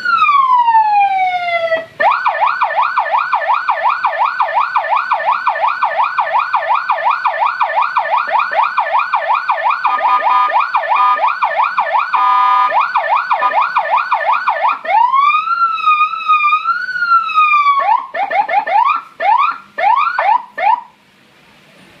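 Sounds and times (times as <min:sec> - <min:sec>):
police siren yelping and wailing: 0:00.0 - 0:21.0
siren horn blast: 0:09.6 - 0:15.3.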